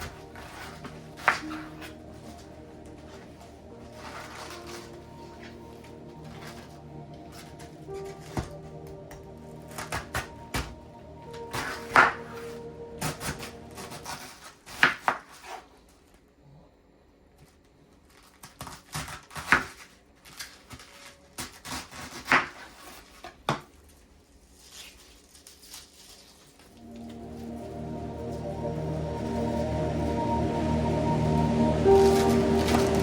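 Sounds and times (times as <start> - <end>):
background music: 0.0 - 14.6, 26.8 - 33.0.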